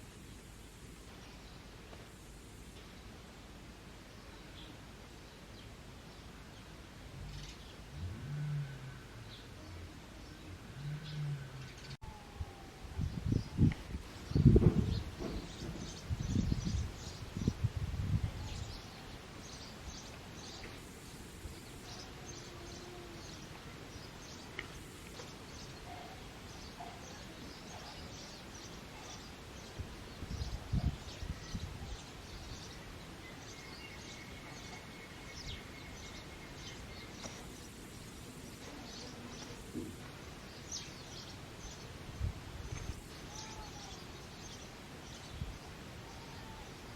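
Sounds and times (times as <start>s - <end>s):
outdoor background hiss: 0.0s - 46.9s
small birds chirping: 13.0s - 46.9s
soft low thump: 14.4s - 16.7s.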